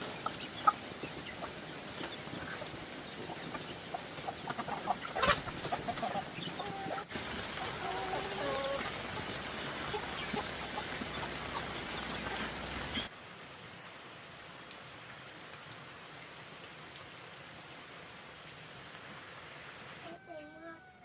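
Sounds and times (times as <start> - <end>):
steady hiss: 7.1 - 20.1.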